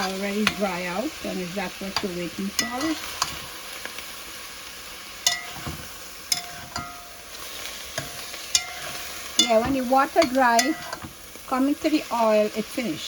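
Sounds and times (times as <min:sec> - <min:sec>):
spinach sizzling in oil: 0:00.0 - 0:13.0
spoon clinking against pot: 0:02.0 - 0:03.4, 0:05.2 - 0:07.2, 0:08.0 - 0:11.1.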